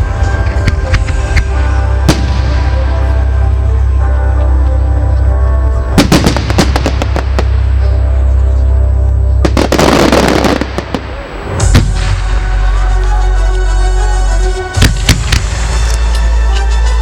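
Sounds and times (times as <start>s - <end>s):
fireworks bangs and crackles: 0.0s - 3.1s, 6.0s - 8.1s, 9.4s - 12.7s, 14.7s - 16.1s
music with heavy bass: 0.0s - 17.0s.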